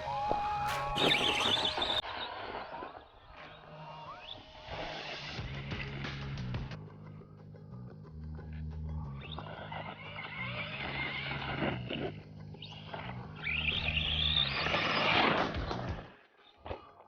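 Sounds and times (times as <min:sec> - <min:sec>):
background music with bass line: 0:05.4 - 0:14.7.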